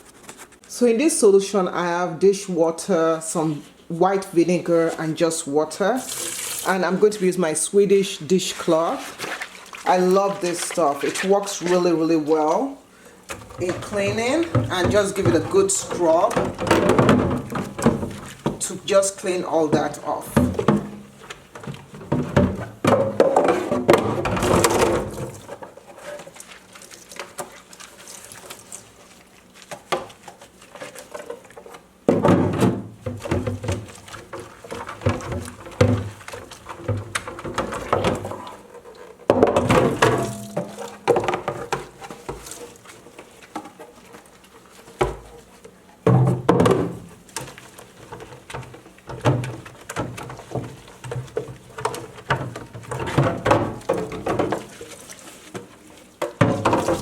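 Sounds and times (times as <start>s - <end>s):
dishcloth scrubbing: 3.4s - 57.0s
knocks and clatter in sink: 13.3s - 26.3s, 29.7s - 44.1s, 46.0s - 57.0s.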